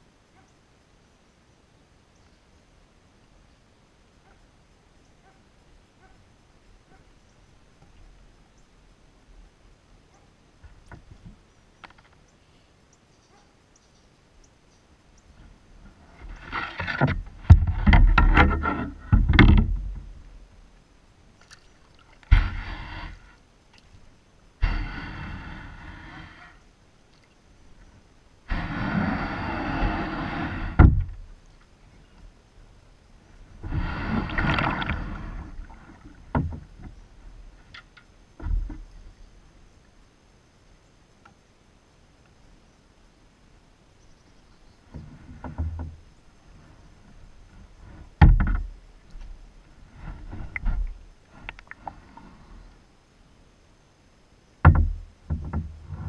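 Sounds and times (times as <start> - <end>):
rubbing on hull: 15.4 - 20.1, 22.3 - 23.4, 28.5 - 31.2
knocks on kayak hull: 54.6 - 55.8.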